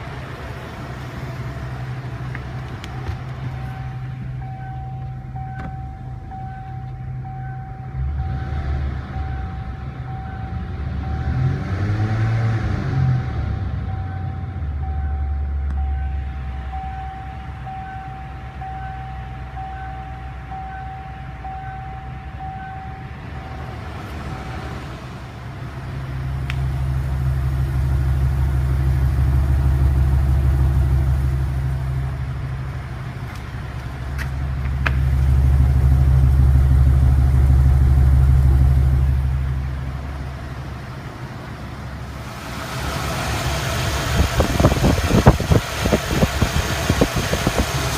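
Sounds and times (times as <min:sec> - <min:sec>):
car engine misfiring: 0:25.0 - 0:47.9.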